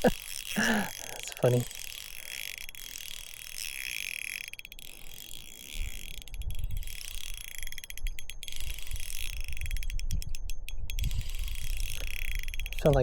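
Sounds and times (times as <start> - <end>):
fishing reel ticking: 0.0 - 13.0
wind buffeting microphone: 5.7 - 13.0.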